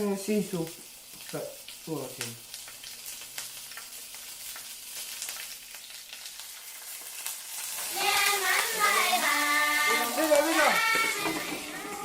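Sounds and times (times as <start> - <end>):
food sizzling in a pan: 0.0 - 12.0
stirring in a pan: 6.8 - 12.0.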